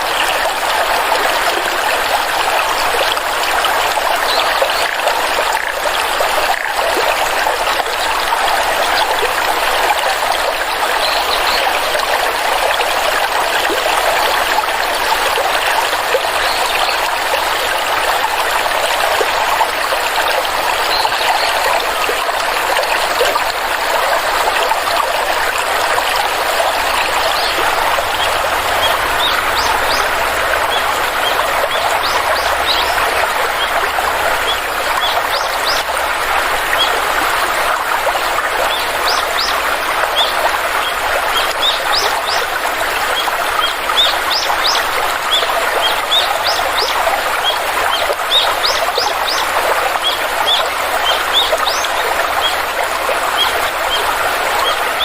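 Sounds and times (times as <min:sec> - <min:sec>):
stream flowing: 0:00.0 - 0:55.0
birds chirping: 0:26.0 - 0:36.0, 0:38.7 - 0:42.6.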